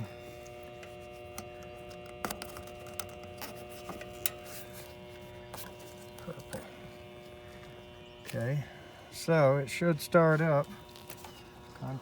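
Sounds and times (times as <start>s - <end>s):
contactor electrical buzz: 0.0s - 12.0s
wire terminals clicking on: 0.4s - 4.5s.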